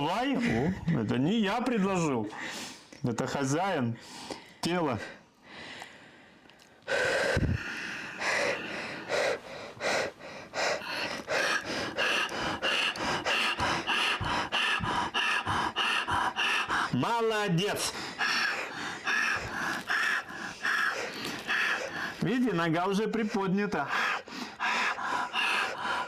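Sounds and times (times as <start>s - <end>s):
woman breathing hard: 5.4s - 17.0s, 17.8s - 22.2s, 23.8s - 26.0s.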